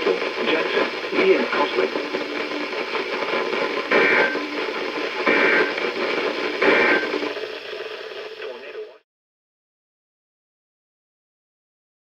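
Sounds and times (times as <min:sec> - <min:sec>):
radio hiss: 0:00.0 - 0:09.0
short data bursts: 0:03.9 - 0:07.3.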